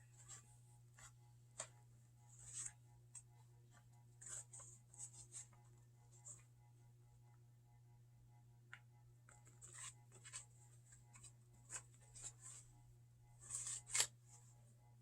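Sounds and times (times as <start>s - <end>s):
book pages turning: 0.1s - 5.6s, 9.3s - 12.7s, 13.4s - 14.2s.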